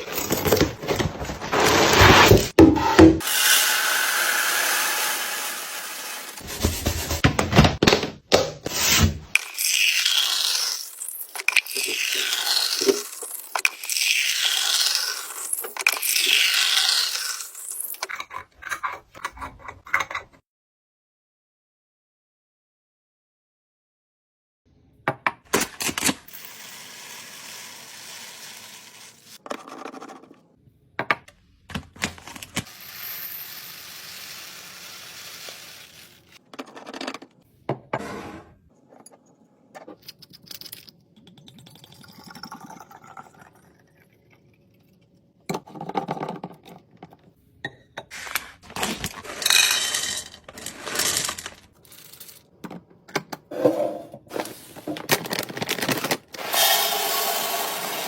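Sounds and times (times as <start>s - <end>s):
containers clicking and clinking: 48.6s - 56.6s.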